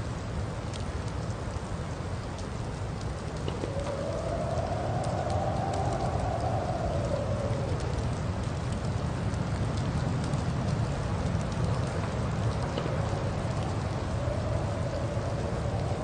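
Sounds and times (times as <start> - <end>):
low rumble and hiss: 0.0 - 16.0
wind howling: 0.0 - 16.0
faint ticks: 0.5 - 16.0.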